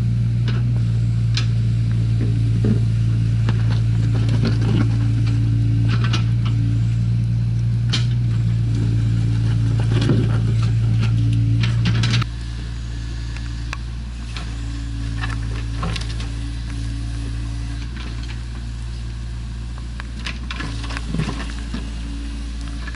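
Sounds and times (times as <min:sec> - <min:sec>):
diesel engine running: 0:00.0 - 0:22.9
bucket clanking and scraping soil: 0:01.4 - 0:06.9, 0:07.8 - 0:12.3, 0:14.2 - 0:19.1, 0:20.2 - 0:22.9.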